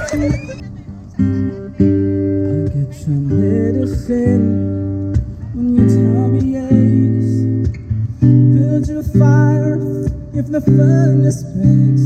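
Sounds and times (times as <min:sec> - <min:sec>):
person singing: 0:00.0 - 0:04.7
strummed acoustic guitar: 0:00.0 - 0:12.0.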